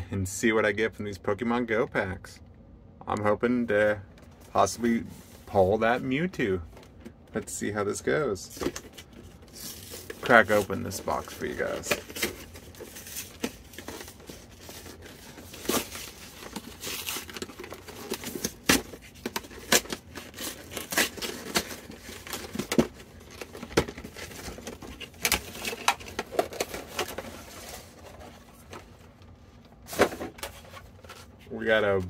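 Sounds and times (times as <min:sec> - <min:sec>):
cardboard packaging crinkling: 0:08.5 - 0:32.0.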